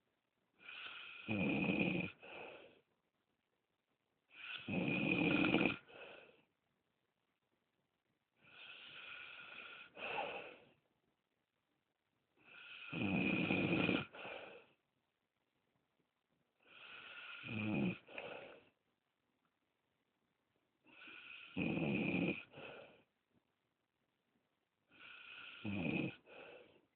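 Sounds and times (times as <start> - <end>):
person snoring: 0.6 - 2.8, 4.3 - 6.4, 8.4 - 10.7, 12.4 - 14.7, 16.7 - 18.7, 20.9 - 23.0, 24.9 - 26.8.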